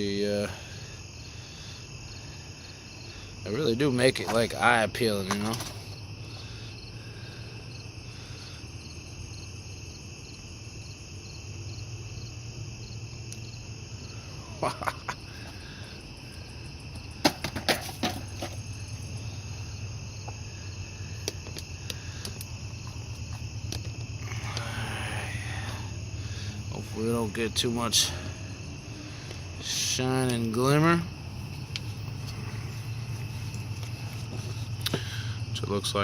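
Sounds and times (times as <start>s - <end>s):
crickets chirping: 0.0s - 36.0s
clicks and clatters of handling: 5.2s - 5.8s.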